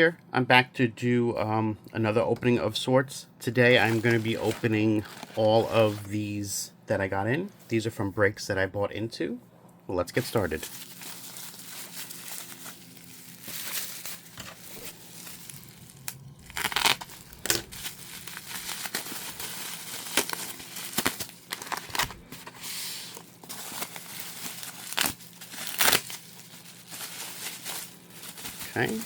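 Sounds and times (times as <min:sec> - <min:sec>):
packaging torn and crinkled: 0:03.8 - 0:06.0, 0:10.5 - 0:29.0.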